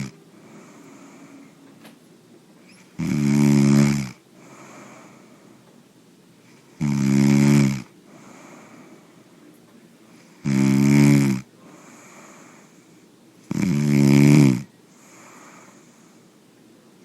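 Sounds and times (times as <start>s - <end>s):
loud snoring: 0.0s - 1.2s, 3.0s - 5.1s, 6.8s - 8.6s, 10.4s - 12.7s, 13.5s - 15.8s
quiet breathing: 0.0s - 1.9s, 2.7s - 5.8s, 6.4s - 17.0s.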